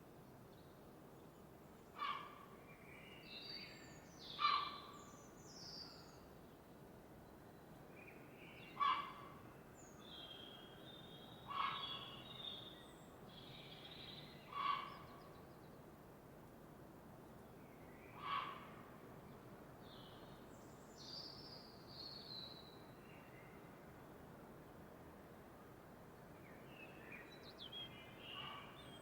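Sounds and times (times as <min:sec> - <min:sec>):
faint background hiss: 0:00.0 - 0:29.0.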